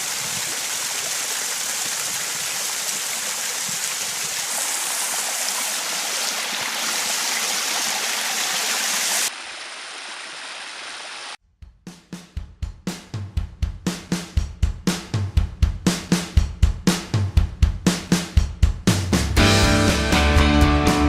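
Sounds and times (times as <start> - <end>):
pool waterfall splashing: 0.0 - 11.4.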